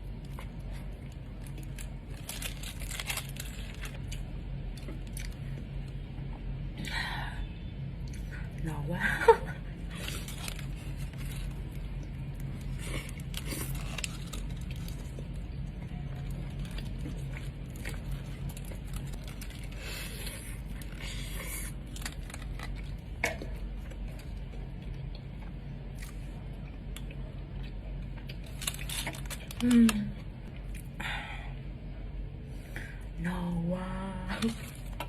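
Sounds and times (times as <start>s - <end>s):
steady low hum: 0.0s - 35.0s
wrapper crinkling and rustling: 0.3s - 4.2s, 9.9s - 21.0s, 21.8s - 23.0s, 28.4s - 30.1s.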